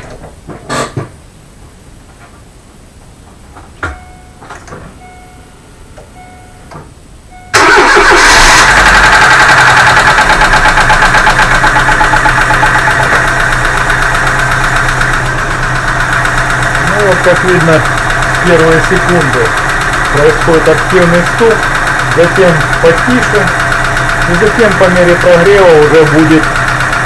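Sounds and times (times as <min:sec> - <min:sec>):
short beeps: 0:03.9 - 0:05.6, 0:06.2 - 0:06.7, 0:07.3 - 0:07.6
car engine starting and idling: 0:04.0 - 0:27.0.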